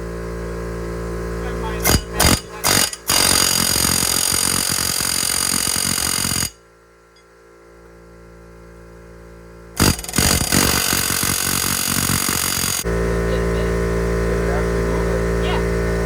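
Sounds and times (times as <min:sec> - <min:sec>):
air impact wrench hammering: 0:01.6 - 0:06.6, 0:09.8 - 0:13.0.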